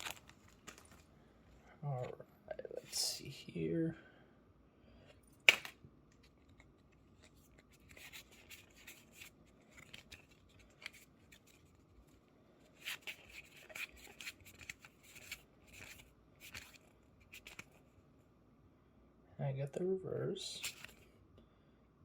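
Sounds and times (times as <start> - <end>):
foil wrapper rustling: 0.0 - 1.1
trading cards rustling and sliding: 0.0 - 1.1, 5.2 - 18.0, 20.6 - 21.1.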